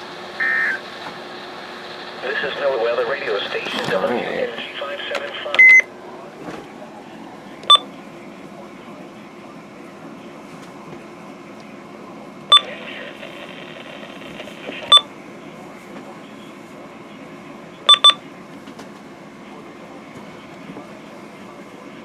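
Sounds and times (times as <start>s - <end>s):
radio hiss and hum: 0.0s - 5.9s, 12.1s - 18.5s
short electronic beeps: 0.4s - 0.8s, 5.6s - 5.9s, 14.9s - 15.1s, 17.9s - 18.2s.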